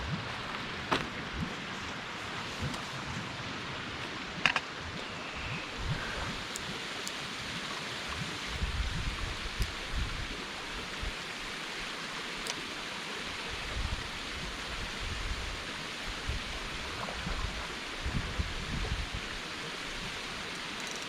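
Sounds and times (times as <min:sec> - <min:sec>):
wind buffeting microphone: 0:05.4 - 0:06.5, 0:08.0 - 0:10.4, 0:13.6 - 0:19.3.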